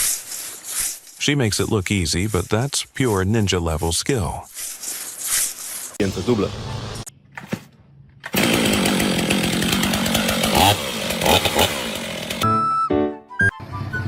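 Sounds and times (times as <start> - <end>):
loud motorised tool running: 8.3 - 12.4.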